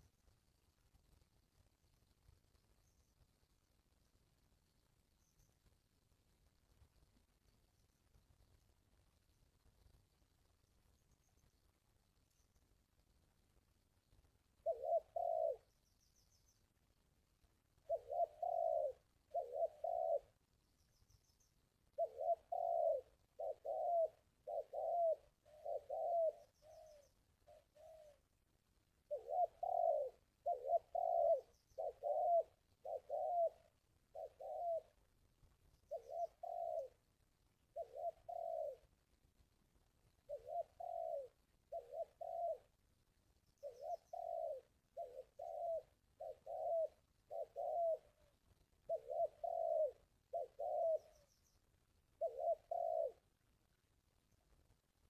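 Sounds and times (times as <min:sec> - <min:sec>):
dove cooing: 0:13.6 - 0:54.5.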